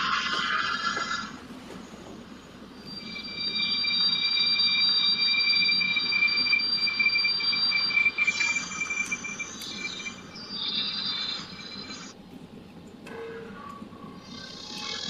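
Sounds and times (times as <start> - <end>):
high-pitched electronic alarm tone: 2.8 - 12.1.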